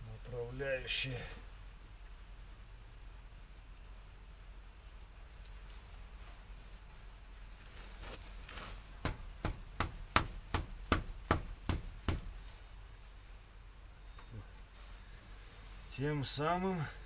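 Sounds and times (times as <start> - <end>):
sharp knocks on metal: 9.0 - 12.4.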